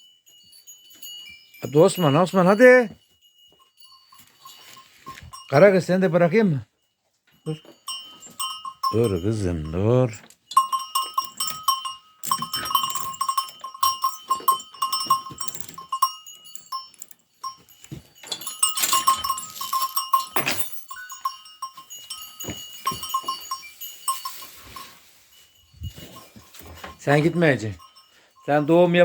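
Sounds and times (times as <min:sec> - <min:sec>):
livestock bells clanking: 0:00.0 - 0:29.0
animals moving and rustling: 0:03.0 - 0:05.5, 0:10.1 - 0:29.0.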